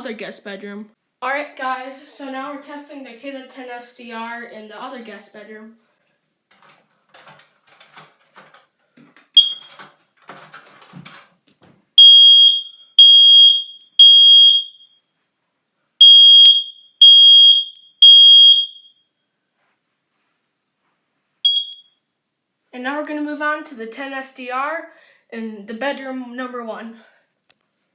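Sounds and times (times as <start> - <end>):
loud high alarm beeps: 9.4 - 9.7, 12.0 - 15.0, 16.0 - 19.0, 21.5 - 22.0
smoke alarm chirp: 9.4 - 9.8, 12.0 - 15.1, 16.0 - 19.1, 21.4 - 22.0.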